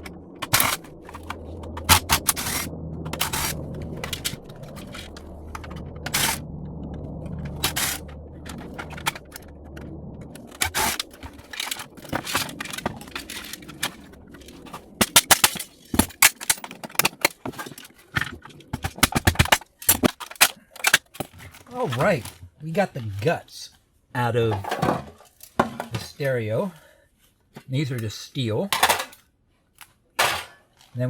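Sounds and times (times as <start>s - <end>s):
steady low hum: 0.0s - 20.1s
plastic and metal parts clicking: 10.6s - 21.7s.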